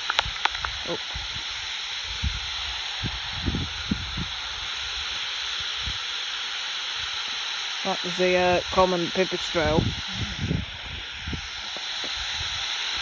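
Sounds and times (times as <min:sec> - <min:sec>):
bat detector hiss: 0:00.0 - 0:13.0.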